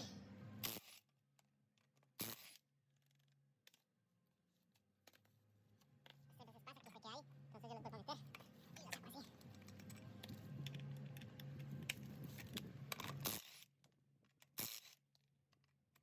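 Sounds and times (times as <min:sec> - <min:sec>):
low steady hum: 0:00.0 - 0:00.7, 0:05.6 - 0:13.3.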